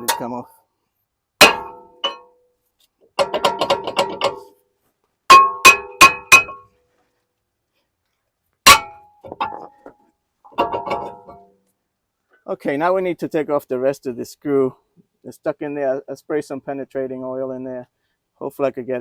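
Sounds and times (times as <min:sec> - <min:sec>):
ringing metallic clanks: 0:01.4 - 0:02.4, 0:03.2 - 0:04.5, 0:05.3 - 0:06.7, 0:08.7 - 0:09.9, 0:10.5 - 0:11.5.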